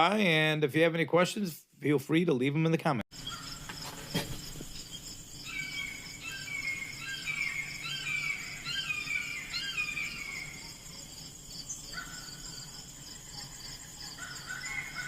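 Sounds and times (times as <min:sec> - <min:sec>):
insects trilling and chirping: 0:03.1 - 0:15.0.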